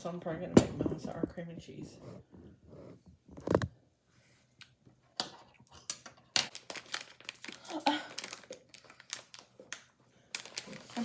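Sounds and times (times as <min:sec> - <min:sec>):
plastic packaging crinkling: 0:05.9 - 0:11.0.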